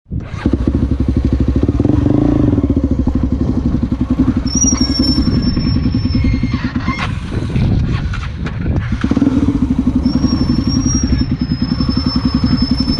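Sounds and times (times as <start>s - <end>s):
motorcycle engine running: 0.1s - 12.9s
thin high whistle: 4.4s - 6.5s, 10.0s - 12.9s.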